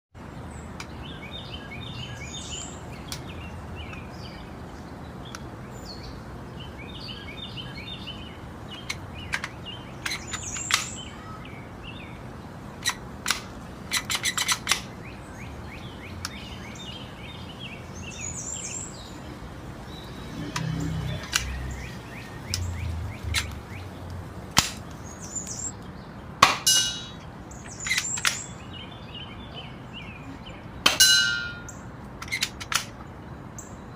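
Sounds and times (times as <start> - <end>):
birds chirping: 0.2 - 33.9.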